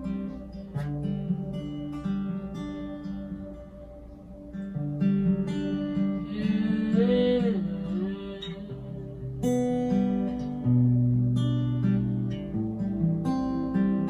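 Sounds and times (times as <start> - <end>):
acoustic guitar strummed slowly: 0.0 - 14.0.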